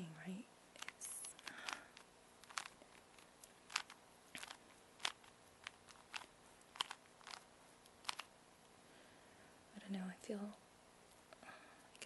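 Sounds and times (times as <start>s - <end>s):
puzzle cube plastic clicks: 0.8s - 8.3s.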